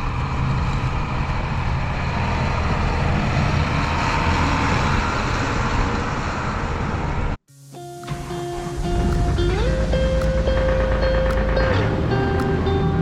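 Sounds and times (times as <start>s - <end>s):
heavy diesel engine running: 8.8s - 13.0s.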